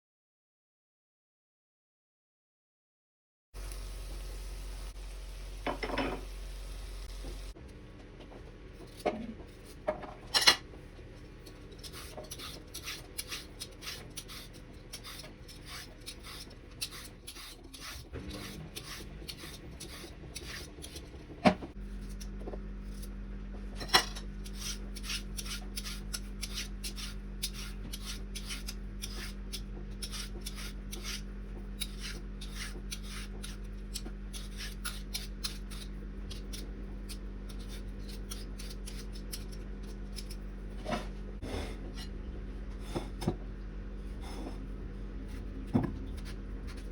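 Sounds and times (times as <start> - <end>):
scraping or cutting strokes: 11.4 - 23.2, 24.4 - 42.1.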